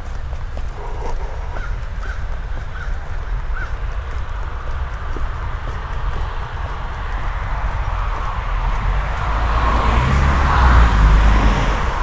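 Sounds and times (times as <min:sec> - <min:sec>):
footsteps on wet pavement: 0:00.0 - 0:12.0
rain hissing: 0:07.5 - 0:12.0.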